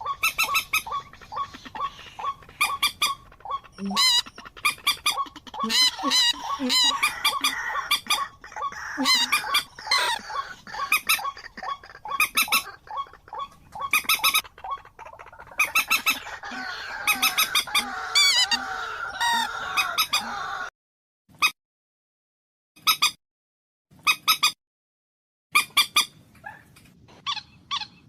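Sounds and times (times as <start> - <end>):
chorus of birds: 0.0 - 20.7
sharp bird calls: 0.0 - 20.7.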